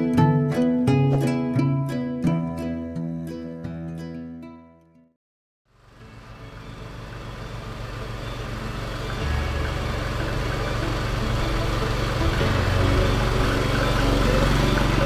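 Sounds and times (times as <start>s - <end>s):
road noise: 5.7s - 15.0s
vehicle engine running: 5.7s - 15.0s.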